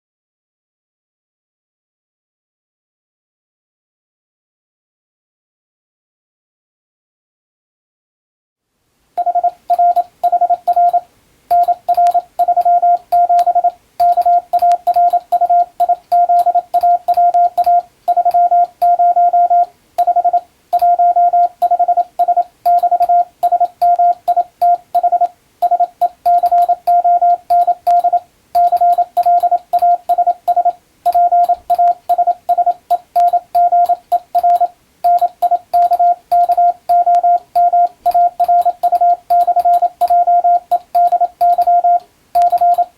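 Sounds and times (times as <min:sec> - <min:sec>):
morse code beeps: 0:09.2 - 0:42.9.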